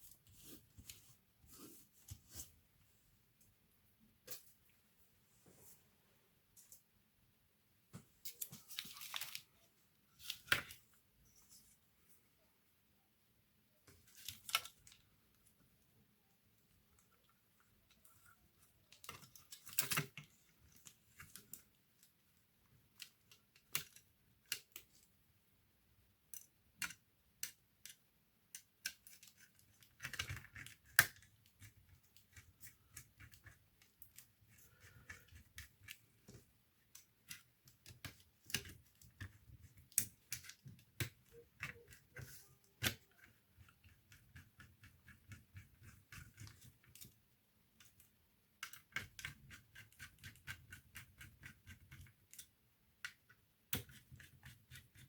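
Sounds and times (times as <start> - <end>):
laptop parts and tools clicking: 26.3 - 47.2.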